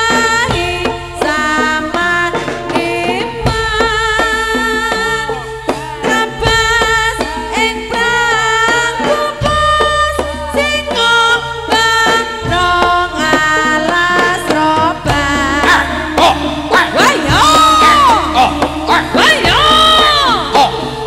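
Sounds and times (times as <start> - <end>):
drum strokes: 0.0 - 21.0
gamelan-style percussion: 0.0 - 21.0
person singing: 0.0 - 21.0
long low notes: 12.3 - 21.0.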